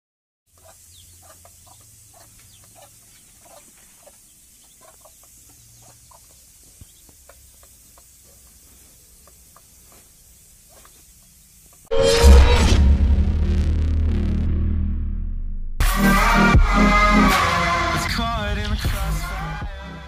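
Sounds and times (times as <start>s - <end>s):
fowl chirping and clucking: 0.6s - 11.8s.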